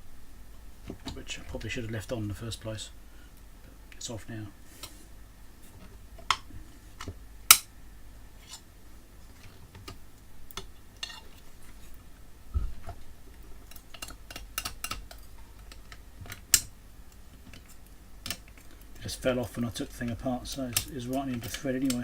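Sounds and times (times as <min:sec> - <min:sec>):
small metal parts clicking: 0:13.7 - 0:16.7.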